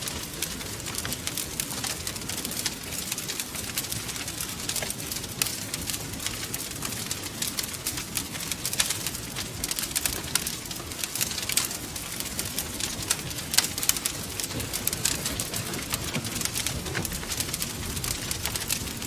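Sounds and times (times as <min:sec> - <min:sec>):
wood fire crackling: 0:00.0 - 0:19.0.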